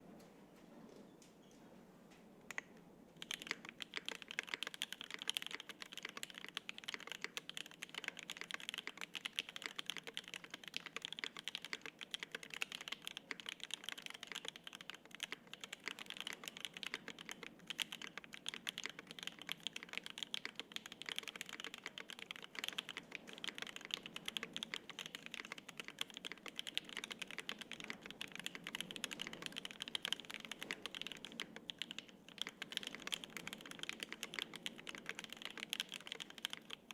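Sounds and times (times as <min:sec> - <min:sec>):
mechanical keyboard typing: 0:02.5 - 0:36.9.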